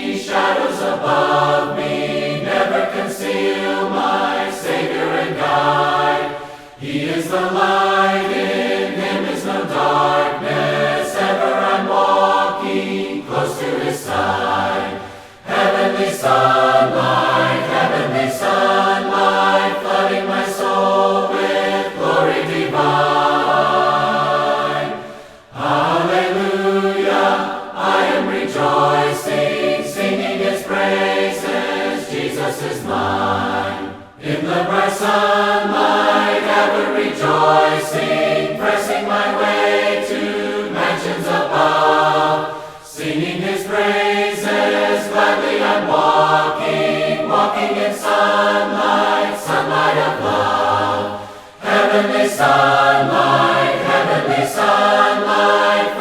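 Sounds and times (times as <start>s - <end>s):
choir singing a hymn: 0.0s - 56.0s.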